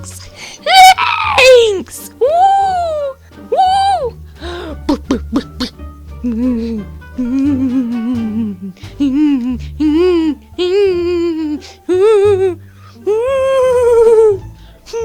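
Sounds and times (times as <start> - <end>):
low background music: 0.0 - 15.0
person humming warbling notes: 4.9 - 14.4.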